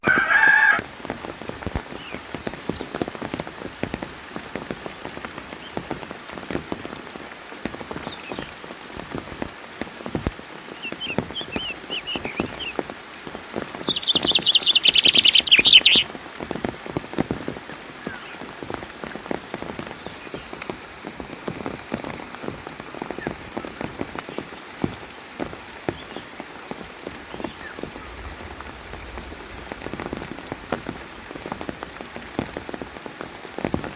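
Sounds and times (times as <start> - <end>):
rain patter: 0.0 - 33.9
high chirping trill: 2.4 - 3.0, 13.5 - 16.0.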